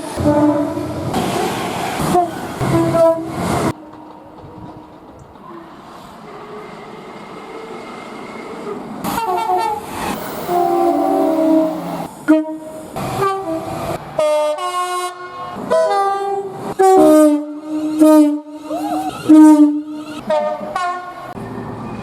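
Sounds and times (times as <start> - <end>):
locomotive air horn blasts: 0.0 - 1.0, 2.1 - 3.7, 9.1 - 21.4
train rumble: 0.0 - 22.0.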